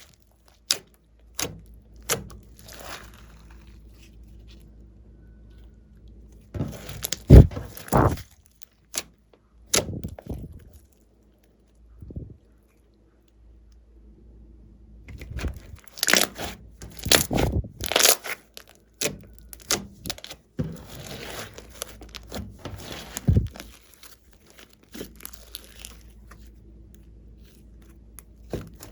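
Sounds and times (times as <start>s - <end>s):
slime crackling and popping: 0.0s - 4.6s, 6.8s - 9.0s, 15.6s - 26.4s
slime rustling: 2.0s - 4.8s, 6.5s - 9.0s, 15.1s - 26.6s, 27.3s - 28.9s.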